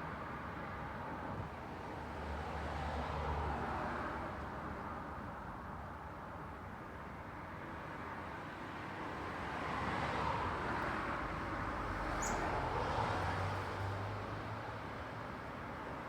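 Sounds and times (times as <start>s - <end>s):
road traffic: 9.0s - 16.0s.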